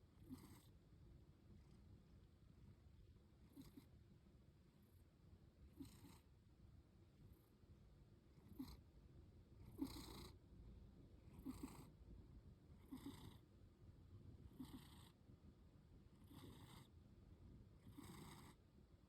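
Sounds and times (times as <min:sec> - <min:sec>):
cat snoring softly: 0:00.1 - 0:00.8, 0:03.4 - 0:04.0, 0:05.7 - 0:06.4, 0:08.3 - 0:08.9, 0:09.6 - 0:10.4, 0:11.2 - 0:12.0, 0:12.8 - 0:13.5, 0:14.5 - 0:15.2, 0:16.1 - 0:17.0, 0:17.8 - 0:18.6.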